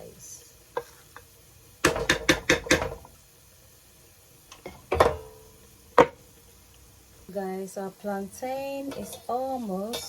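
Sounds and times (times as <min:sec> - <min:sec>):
metal cookware clanking: 0:01.8 - 0:03.1, 0:04.5 - 0:06.2, 0:08.9 - 0:10.0.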